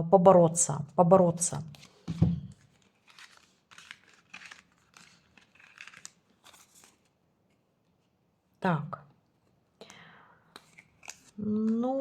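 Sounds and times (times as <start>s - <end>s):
cards shuffling: 1.7s - 7.1s, 10.6s - 11.8s.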